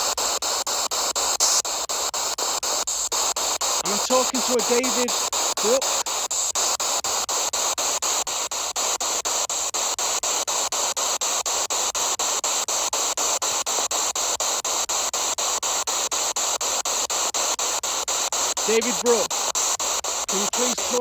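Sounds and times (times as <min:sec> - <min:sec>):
radio static sweeping: 0:00.0 - 0:09.4, 0:16.1 - 0:21.0.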